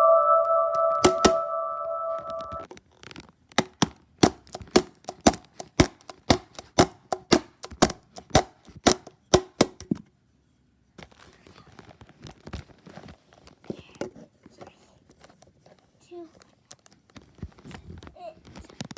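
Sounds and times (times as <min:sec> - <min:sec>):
plastic bottle being struck: 0:01.0 - 0:01.4.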